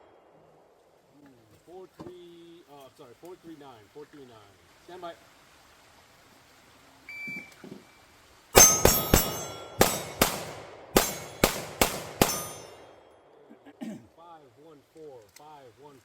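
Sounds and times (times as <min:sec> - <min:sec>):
bullets ringing steel targets: 0:08.6 - 0:13.4
pistol shots: 0:08.6 - 0:13.4.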